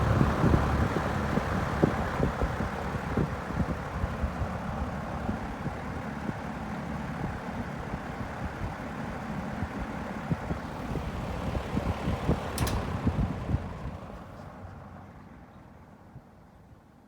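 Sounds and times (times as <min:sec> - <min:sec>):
box fan running: 0:00.0 - 0:13.8
fan switch click: 0:12.5 - 0:13.1.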